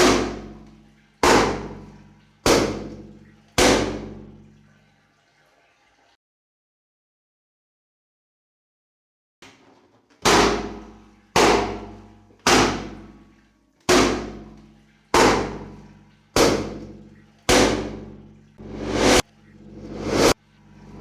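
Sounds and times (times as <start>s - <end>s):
swelling sound cutting off: 18.6s - 20.4s
steady low tone: 18.6s - 21.0s.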